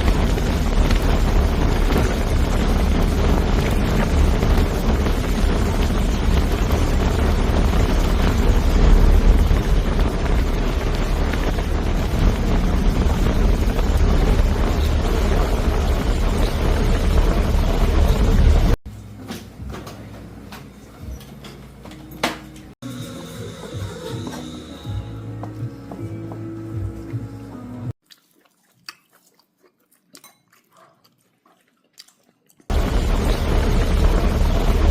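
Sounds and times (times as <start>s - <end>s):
boat engine rumbling: 0.0s - 18.8s, 32.7s - 34.9s
background music: 19.3s - 27.9s.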